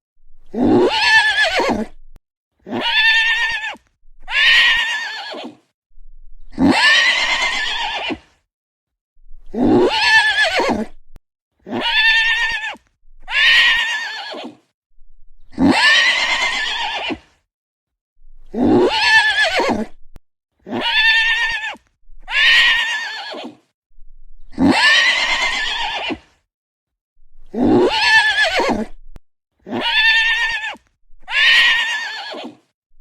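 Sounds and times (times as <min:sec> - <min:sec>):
horse neighing: 0:00.5 - 0:02.0, 0:02.7 - 0:05.6, 0:06.5 - 0:08.2, 0:09.5 - 0:11.0, 0:11.7 - 0:14.6, 0:15.6 - 0:17.2, 0:18.5 - 0:20.0, 0:20.7 - 0:23.6, 0:24.6 - 0:26.2, 0:27.6 - 0:29.0, 0:29.7 - 0:32.6.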